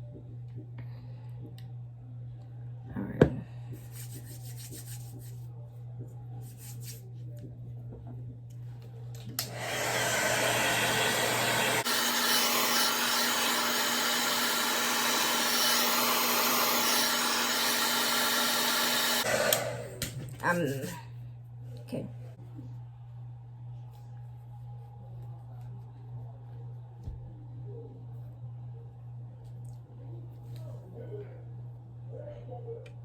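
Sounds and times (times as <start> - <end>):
low room hum: 0.0 - 33.0
hair dryer blowing: 9.4 - 21.0.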